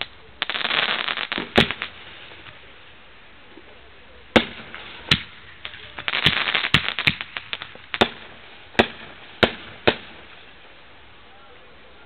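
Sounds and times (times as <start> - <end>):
firework bangs: 0.0 - 2.8, 4.3 - 10.7
firework crackling pops: 0.0 - 2.9, 4.3 - 10.8.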